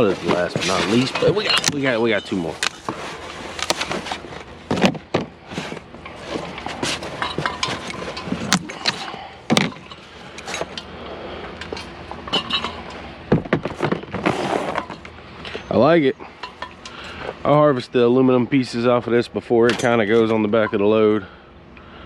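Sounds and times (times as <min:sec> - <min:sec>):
scrap metal clanking: 0:00.0 - 0:10.9, 0:11.5 - 0:15.7.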